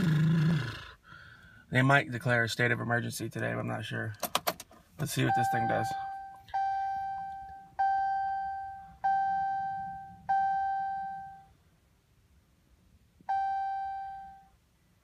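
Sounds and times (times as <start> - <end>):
dashboard chime: 5.2 - 11.4.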